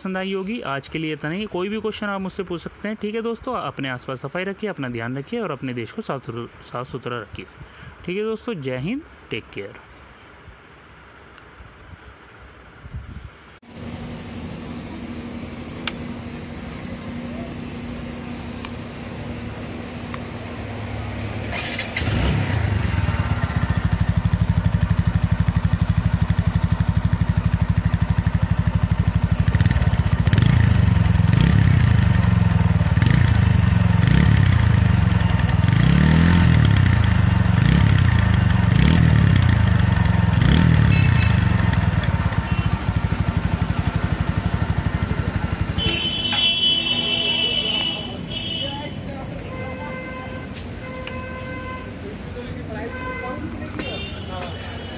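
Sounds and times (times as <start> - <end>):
motorcycle engine revving: 13.7 - 48.8.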